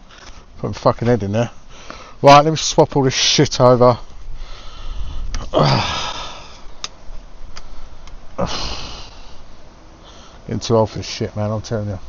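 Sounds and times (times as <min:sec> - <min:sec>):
man breathing heavily: 0:01.6 - 0:02.2, 0:04.3 - 0:06.8, 0:07.6 - 0:10.5
man groaning with effort: 0:05.4 - 0:06.6, 0:08.4 - 0:09.2.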